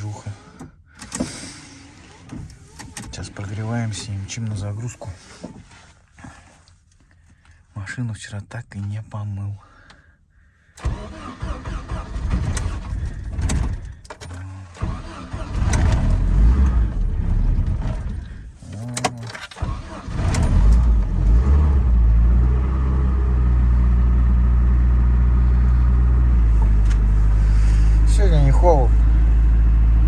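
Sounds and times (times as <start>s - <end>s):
engine knocks and clatter: 12.2s - 19.4s, 20.0s - 22.0s.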